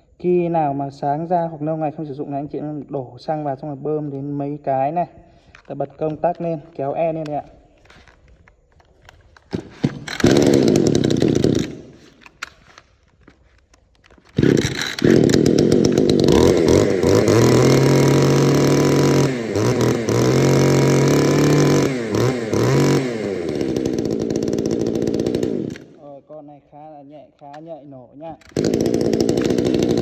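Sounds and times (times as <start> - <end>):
chainsaw engine revving: 9.0 - 12.8, 14.0 - 26.1, 28.4 - 30.0.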